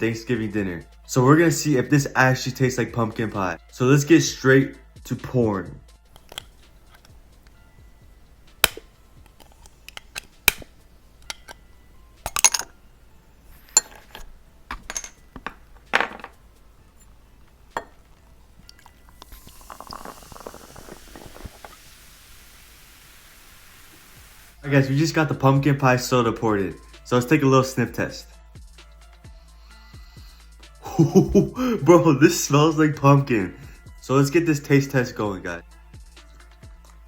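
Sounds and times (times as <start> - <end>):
glass clinks and taps: 8.6 - 20.1
high fizzing hiss: 15.8 - 24.7
soda pouring into a glass: 17.6 - 24.6.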